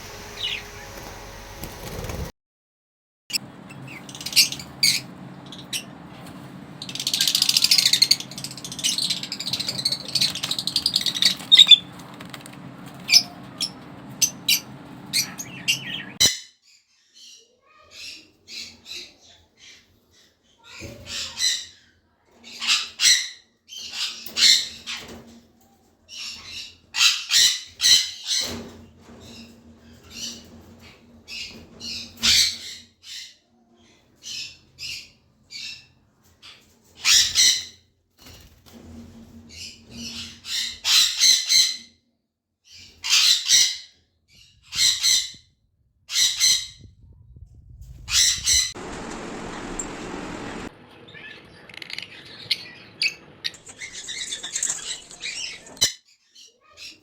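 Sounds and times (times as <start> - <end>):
parrots squawking: 6.9 - 11.9, 13.0 - 16.4, 40.0 - 41.9, 42.7 - 43.9, 44.7 - 45.4, 46.1 - 46.8, 51.2 - 57.0
rustling noise: 46.8 - 50.7.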